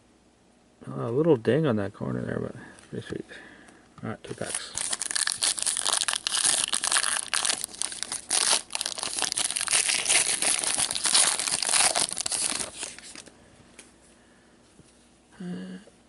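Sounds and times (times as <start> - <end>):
card pack wrappers crinkling: 4.3 - 13.3.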